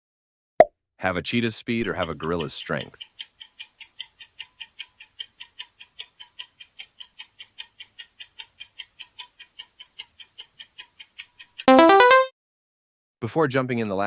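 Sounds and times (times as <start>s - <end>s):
fast clock ticking: 1.8s - 11.8s.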